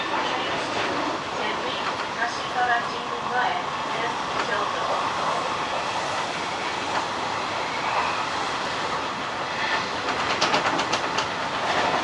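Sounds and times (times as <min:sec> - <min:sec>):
train wheels rumbling on rail: 0:00.0 - 0:12.0
wheels clicking over rail joints: 0:10.0 - 0:12.0.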